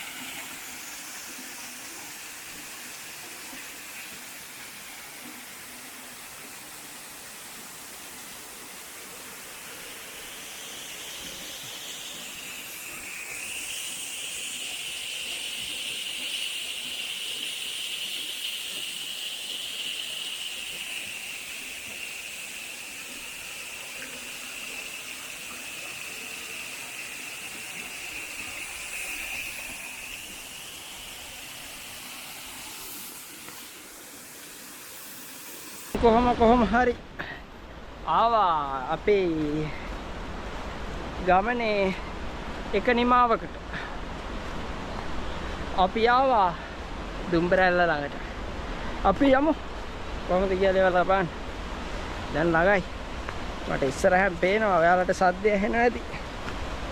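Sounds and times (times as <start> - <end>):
stream water flowing: 0.0 - 36.1, 37.5 - 56.9
high buzzing drone: 8.4 - 36.0.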